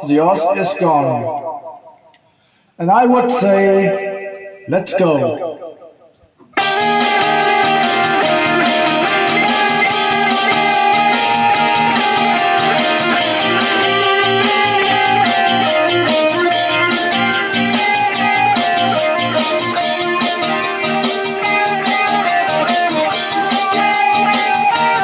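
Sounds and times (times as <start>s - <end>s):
guitar-led instrumental music: 6.4s - 25.0s.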